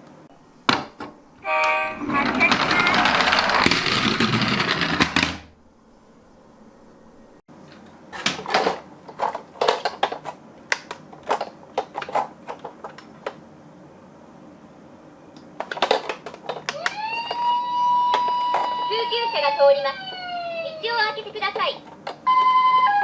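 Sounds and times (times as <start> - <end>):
toy cars and plastic track clicking: 2.0 - 5.4, 15.6 - 20.3.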